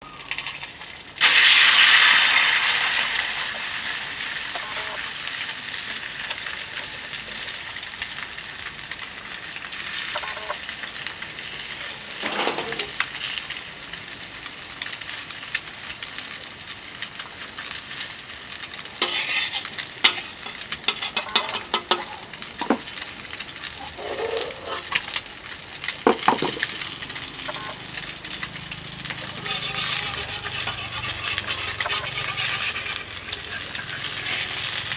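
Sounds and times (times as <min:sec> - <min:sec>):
egg sizzling in oil: 0:00.0 - 0:34.9
utensil scraping pan: 0:04.4 - 0:05.1, 0:10.1 - 0:10.6, 0:12.1 - 0:13.0, 0:19.0 - 0:25.2, 0:26.1 - 0:28.0, 0:29.0 - 0:34.9.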